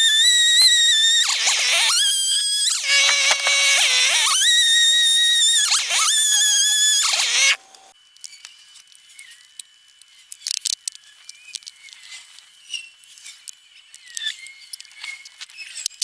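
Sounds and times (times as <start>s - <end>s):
chainsaw cutting through log: 0.0s - 7.9s.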